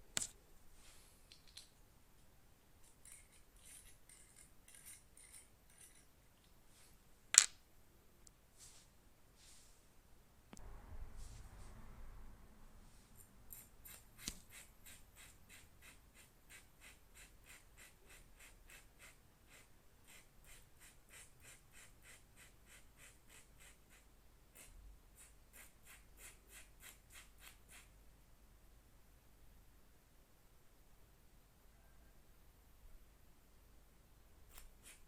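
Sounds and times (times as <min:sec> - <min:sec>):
needle file rasping on metal: 0:03.0 - 0:06.1, 0:13.5 - 0:27.9, 0:34.5 - 0:35.0.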